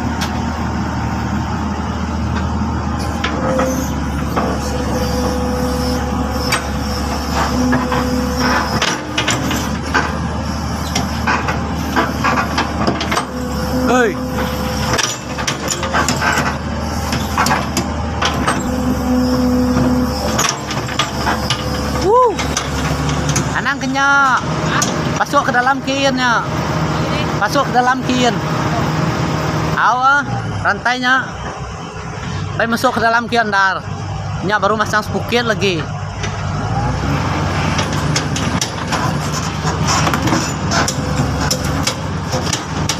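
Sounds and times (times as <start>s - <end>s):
steady whine: 0.0s - 36.9s
excavator diesel engine running: 0.0s - 42.9s
metallic clanks and knocks: 6.5s - 13.5s, 14.4s - 18.8s, 19.7s - 21.8s, 37.6s - 42.9s.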